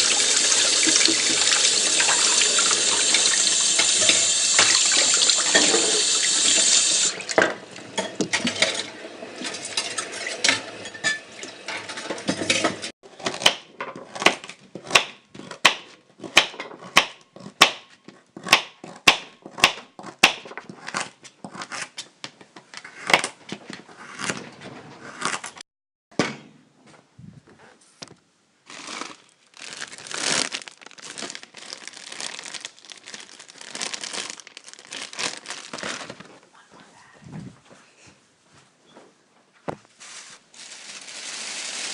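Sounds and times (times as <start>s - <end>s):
tap water running: 0.0s - 12.3s, 40.6s - 41.9s.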